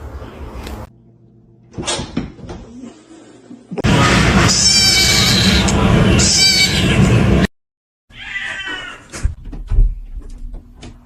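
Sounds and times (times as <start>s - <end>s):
loud mixed noise: 3.8s - 7.5s
cat meowing: 8.1s - 9.1s.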